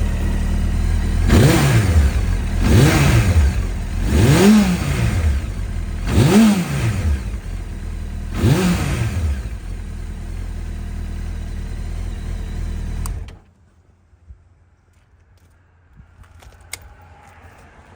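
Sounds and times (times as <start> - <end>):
motorcycle engine revving and idling: 0.0 - 13.4.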